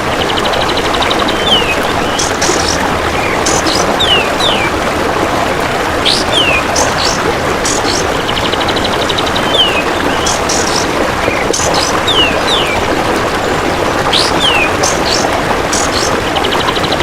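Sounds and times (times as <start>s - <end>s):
steady rushing background noise: 0.0s - 17.0s
bird whistles and chirps: 9.5s - 12.8s.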